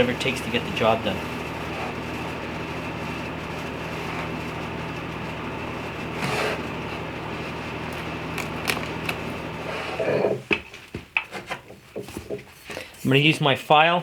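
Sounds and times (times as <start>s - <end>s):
machine hum and hiss: 0.0s - 10.8s.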